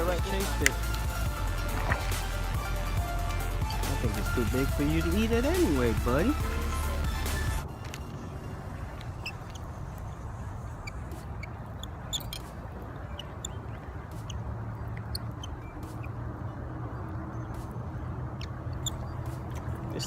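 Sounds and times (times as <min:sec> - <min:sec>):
steady low rumble: 0:00.0 - 0:15.8.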